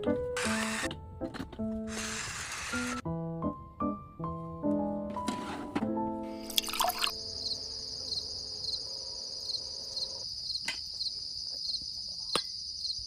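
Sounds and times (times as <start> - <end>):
background music: 0.0 - 8.1
insects chirring: 6.4 - 13.0.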